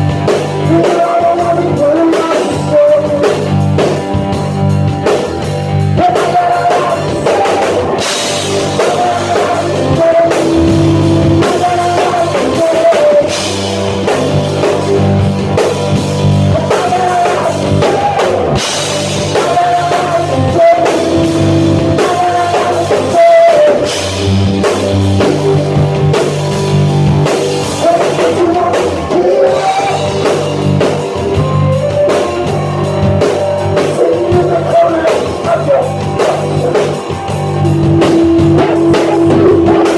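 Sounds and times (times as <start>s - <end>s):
person singing: 0.0s - 4.1s, 5.9s - 14.6s, 16.4s - 24.4s, 27.5s - 39.9s
live rock band: 0.0s - 39.9s.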